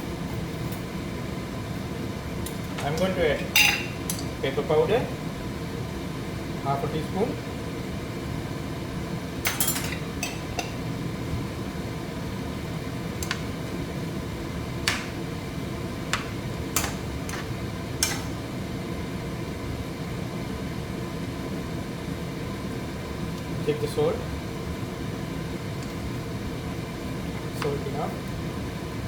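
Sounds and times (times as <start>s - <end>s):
steady low hum: 0.0s - 29.0s
utensil clinking against pot: 2.8s - 4.3s, 9.4s - 10.8s, 16.1s - 18.4s.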